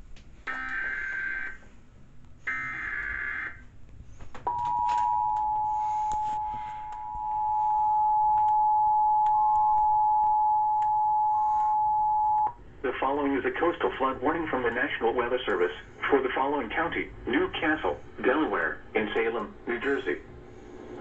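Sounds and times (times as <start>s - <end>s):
steady two-tone beep: 4.5s - 12.5s.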